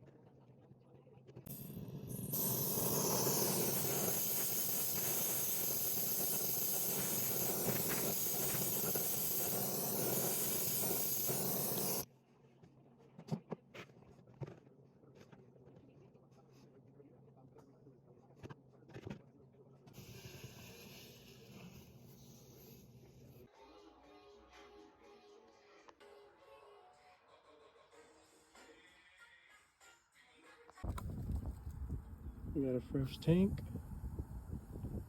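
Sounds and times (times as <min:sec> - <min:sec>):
gas hissing through hose: 0:01.5 - 0:12.1, 0:20.0 - 0:22.9.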